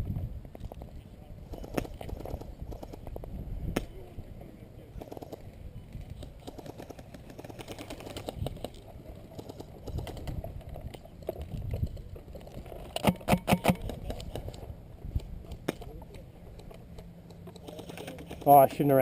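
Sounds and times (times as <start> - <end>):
small clicks and rustles: 5.0 - 13.1, 13.7 - 18.9
airsoft gun pops: 13.0 - 14.0.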